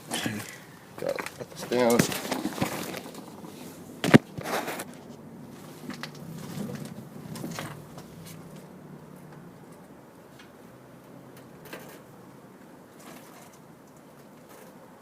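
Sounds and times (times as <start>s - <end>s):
faint rustling: 0.0s - 10.7s.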